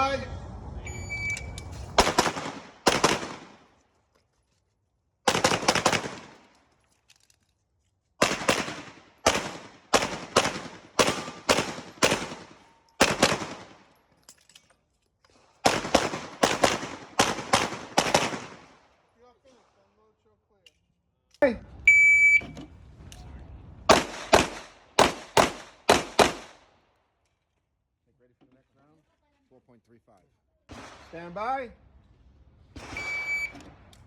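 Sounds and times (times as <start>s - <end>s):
shot timer beep: 0.9s - 1.6s, 21.9s - 22.6s, 33.0s - 33.6s
pistol shots with echo: 2.0s - 3.6s, 5.3s - 6.4s, 8.2s - 13.8s, 15.6s - 18.8s, 23.9s - 26.6s.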